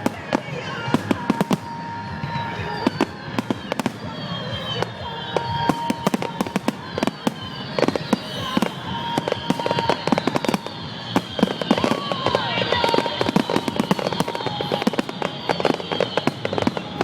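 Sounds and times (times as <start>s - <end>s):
fireworks bangs and crackles: 0.0s - 17.0s
fireworks whistling: 0.0s - 17.0s.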